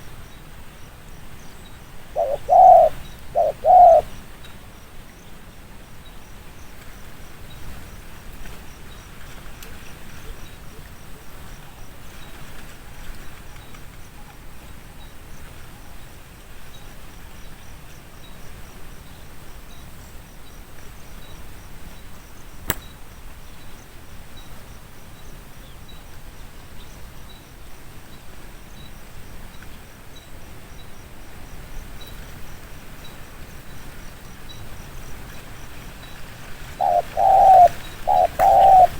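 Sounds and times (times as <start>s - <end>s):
faint insect-like chirp: 16.7s - 38.9s.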